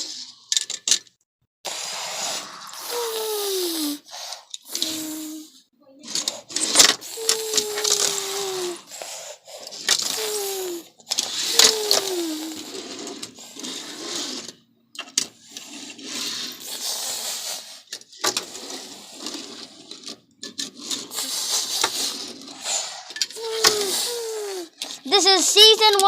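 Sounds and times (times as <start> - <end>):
toy cars rolling and clicking: 0.0 - 1.2, 4.3 - 5.4, 6.0 - 26.0
short downward gliding tones: 1.8 - 4.0.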